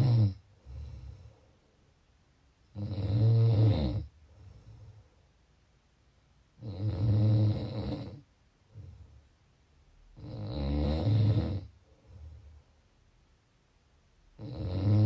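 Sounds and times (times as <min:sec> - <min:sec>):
loud rattling snores: 0:00.0 - 0:01.0, 0:02.7 - 0:04.1, 0:06.6 - 0:08.2, 0:10.2 - 0:11.7, 0:14.4 - 0:15.0
soft out-breath: 0:04.2 - 0:05.4, 0:11.8 - 0:12.9.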